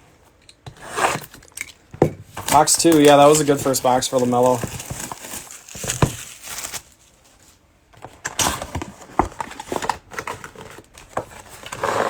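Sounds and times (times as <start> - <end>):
soft rustling: 3.1 - 7.6.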